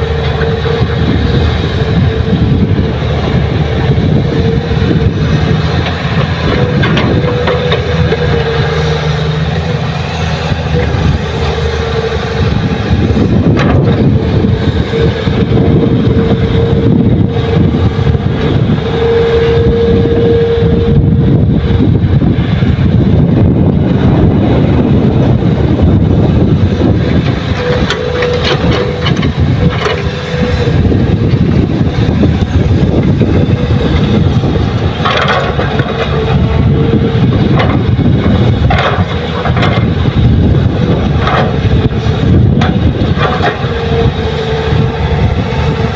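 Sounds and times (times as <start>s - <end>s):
diesel engines rumbling: 0.0s - 45.9s
thin engine whine: 0.0s - 45.9s
knocks and rattles: 5.8s - 8.2s, 35.0s - 36.4s, 37.4s - 40.0s.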